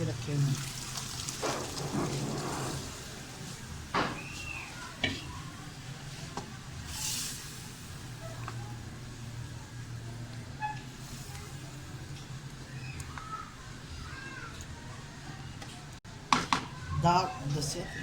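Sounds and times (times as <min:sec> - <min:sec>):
stirring clatter and scraping in pot: 0:01.3 - 0:03.7.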